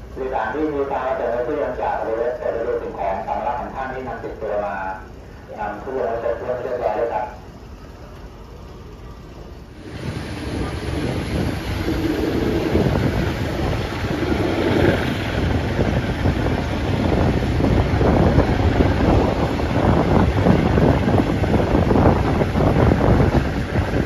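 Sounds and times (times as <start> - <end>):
moving train rumble: 0.0 - 24.0
rushing wind: 9.1 - 24.0.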